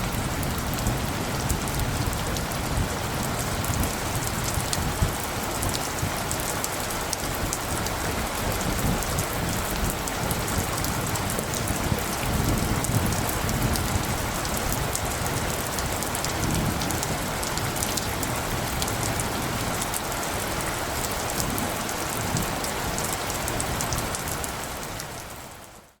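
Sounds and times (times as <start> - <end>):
low wind rumble in gusts: 0.0 - 25.8.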